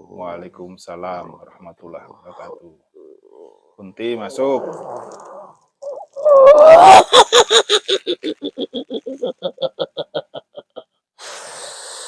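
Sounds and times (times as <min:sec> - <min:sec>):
person laughing shrilly: 0:06.2 - 0:10.8
breathy hiss: 0:11.2 - 0:12.0.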